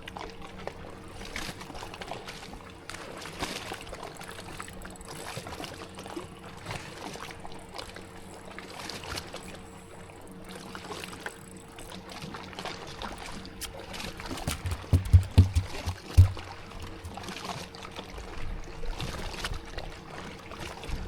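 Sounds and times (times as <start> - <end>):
water lapping at hull: 0.0 - 21.0
electric trolling motor hum: 3.6 - 14.2
small ticks: 4.1 - 5.5.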